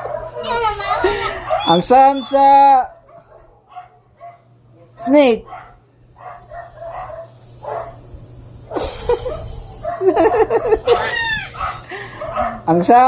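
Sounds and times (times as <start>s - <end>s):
person hissing like a snake: 6.4s - 12.2s
voiced squeals: 10.8s - 12.2s.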